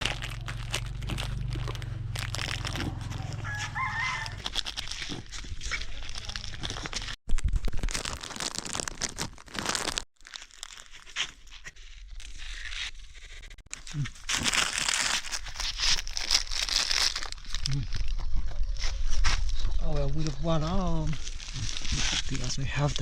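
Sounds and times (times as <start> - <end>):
rooster crowing: 2.8 - 4.5.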